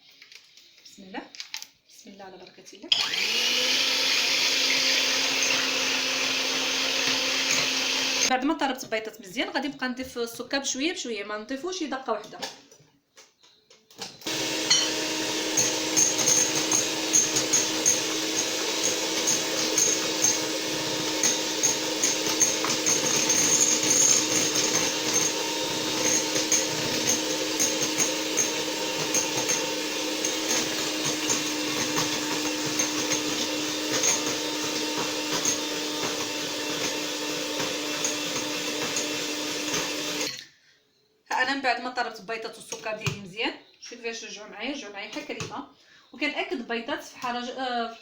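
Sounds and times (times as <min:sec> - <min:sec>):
electric mixer running: 0:02.9 - 0:08.3, 0:14.2 - 0:40.4.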